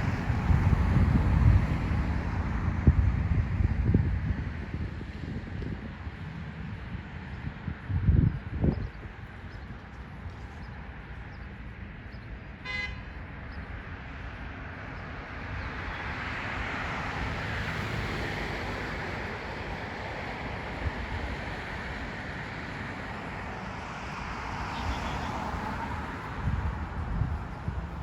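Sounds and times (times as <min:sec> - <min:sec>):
traffic noise: 0:00.0 - 0:28.0
vehicle horn toot: 0:12.6 - 0:13.1, 0:24.7 - 0:25.5
car passing: 0:14.0 - 0:28.0.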